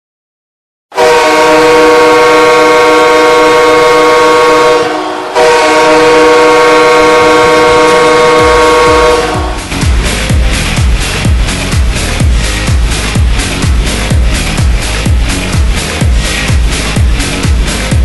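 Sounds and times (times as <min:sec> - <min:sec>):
goal horn blasts: 0:00.9 - 0:09.8
thumping music beat: 0:05.4 - 0:18.0.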